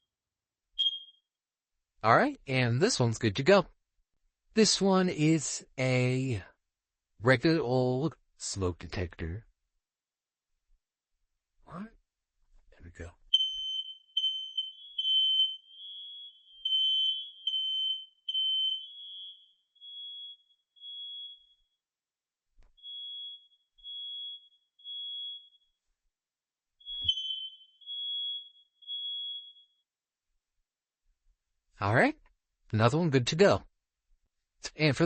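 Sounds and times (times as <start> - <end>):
louder second beep: 0.8 - 1.2
smoke detector beeping: 0.8 - 1.2, 13.3 - 21.6, 22.8 - 25.7, 26.8 - 29.8.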